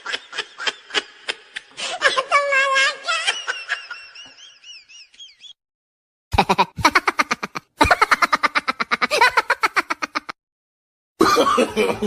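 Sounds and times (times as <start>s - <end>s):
rapid choppy laugh: 6.3s - 10.4s, 11.2s - 12.0s.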